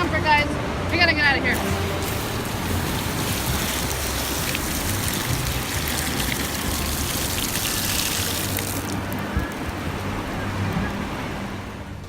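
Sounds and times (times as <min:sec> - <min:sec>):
ocean surf washing up beach: 0:01.5 - 0:12.0
foam crackling: 0:01.6 - 0:09.8.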